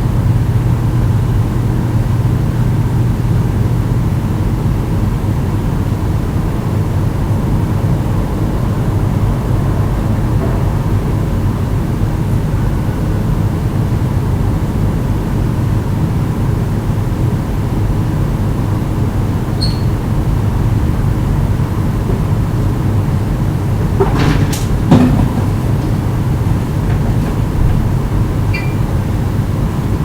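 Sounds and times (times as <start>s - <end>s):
water heater humming: 0.0s - 4.8s, 17.6s - 30.0s.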